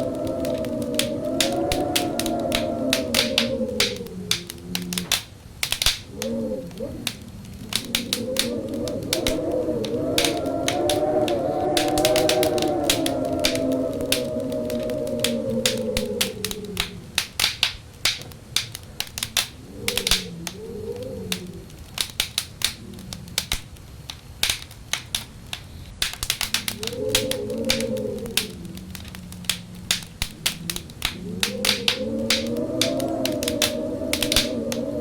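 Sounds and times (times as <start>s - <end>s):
wind howling: 0.0s - 35.0s
wood fire crackling: 0.0s - 35.0s.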